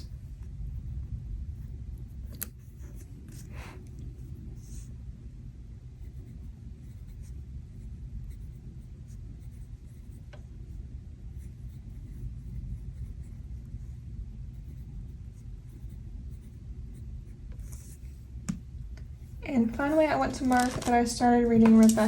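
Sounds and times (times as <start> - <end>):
low rumble: 0.0 - 21.9
pen scratching on paper: 1.6 - 4.9, 6.0 - 18.2.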